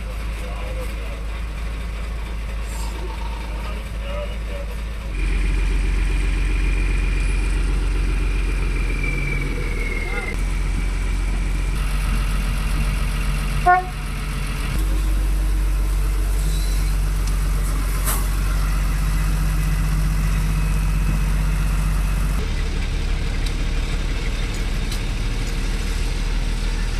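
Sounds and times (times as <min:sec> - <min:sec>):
vehicle engines running: 0:00.0 - 0:26.9.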